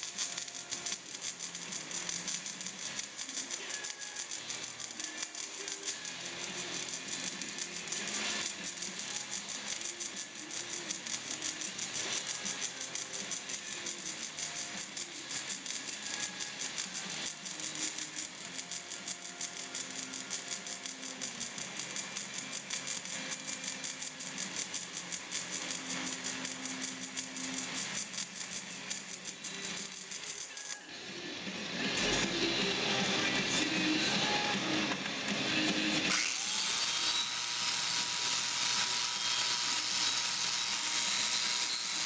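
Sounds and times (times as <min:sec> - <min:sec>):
shaker-like rattle beat: 0:00.0 - 0:30.8.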